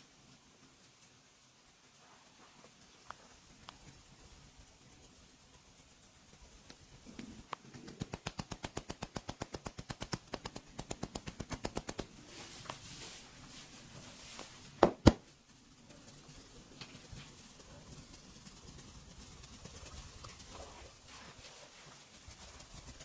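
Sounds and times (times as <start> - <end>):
hands tapping in massage: 6.7 - 12.1, 14.8 - 15.3
loud sharp slaps: 8.0 - 12.1, 14.8 - 15.3.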